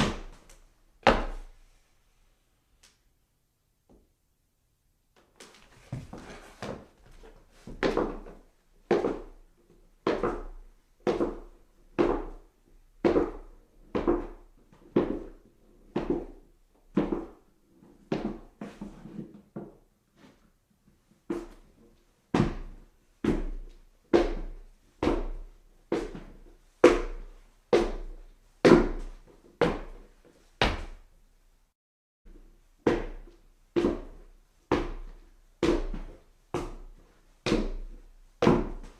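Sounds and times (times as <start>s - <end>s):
footsteps on stairs: 5.2s - 9.4s.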